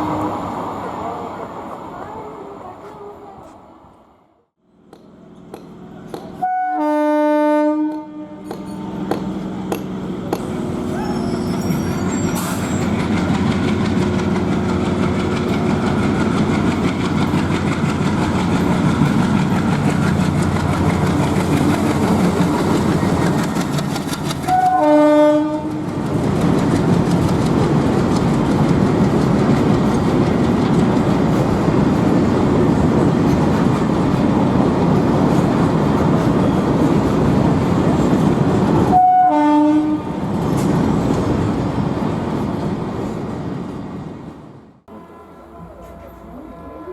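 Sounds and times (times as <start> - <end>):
diesel locomotive engine: 0.0 - 46.9
locomotive horn: 6.4 - 9.0, 24.5 - 25.9, 38.9 - 40.1, 44.9 - 46.9.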